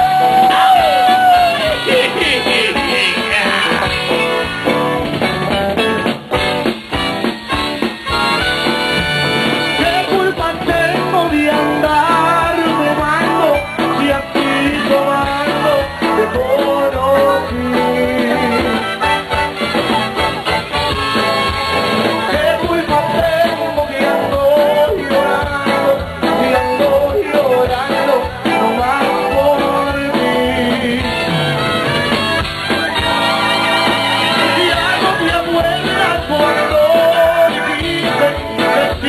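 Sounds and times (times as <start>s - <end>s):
person singing over a band: 0.0s - 4.7s, 9.7s - 19.4s, 22.0s - 31.8s, 32.9s - 39.0s.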